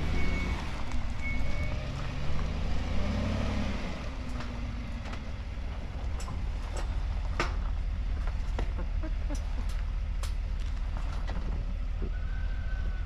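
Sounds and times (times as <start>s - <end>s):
vehicle engine running: 0.0s - 13.0s
sharp clicks and knocks: 6.0s - 12.2s.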